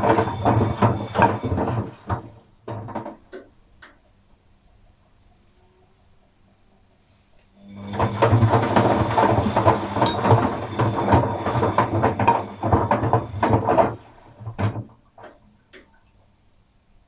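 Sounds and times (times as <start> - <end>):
washing machine motor hum: 0.0 - 3.4, 7.6 - 17.0
objects knocking in drum: 0.0 - 3.6, 7.9 - 15.9.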